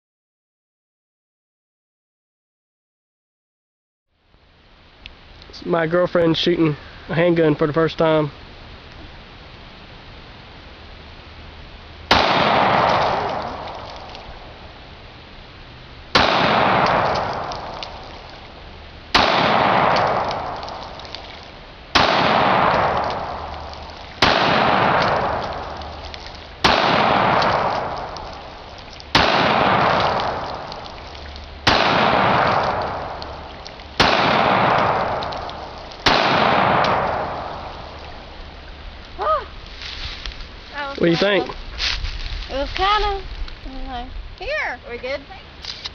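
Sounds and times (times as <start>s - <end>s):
pistol shots with echo: 12.1s - 13.6s, 16.2s - 17.5s, 19.2s - 20.6s, 22.0s - 23.3s, 24.2s - 25.4s, 26.6s - 28.0s, 29.2s - 30.6s, 31.6s - 33.2s, 34.0s - 37.6s.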